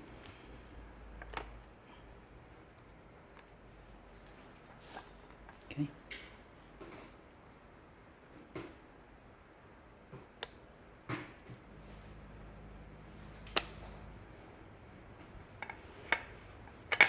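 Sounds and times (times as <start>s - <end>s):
faint low hum: 9.1s - 17.0s.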